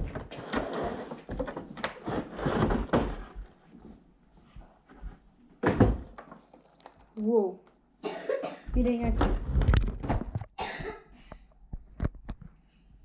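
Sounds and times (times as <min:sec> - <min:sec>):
cardboard and plastic rustling: 0:00.0 - 0:04.0, 0:04.6 - 0:07.3, 0:09.0 - 0:10.5.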